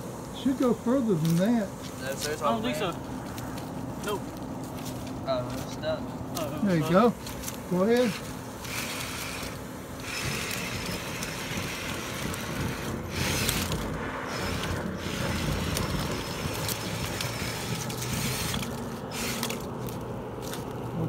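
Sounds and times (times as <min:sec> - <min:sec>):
brush scraping against duct: 0:01.0 - 0:21.0
leaf blower rushing: 0:06.6 - 0:21.0
battery drill whirring: 0:07.7 - 0:19.7.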